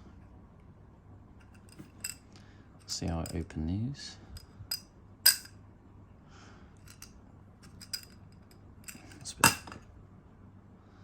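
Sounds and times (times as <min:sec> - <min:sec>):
metal cups clinking: 0:04.7 - 0:05.5, 0:06.9 - 0:08.2, 0:08.9 - 0:09.8.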